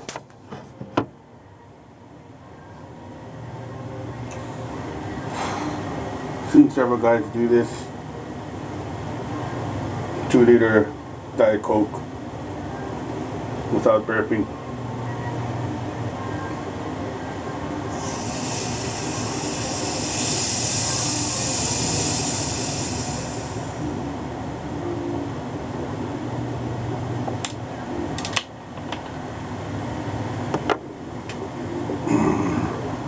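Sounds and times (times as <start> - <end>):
steady low hum: 14.8 - 28.1
gas hissing from bottle: 17.9 - 24.2.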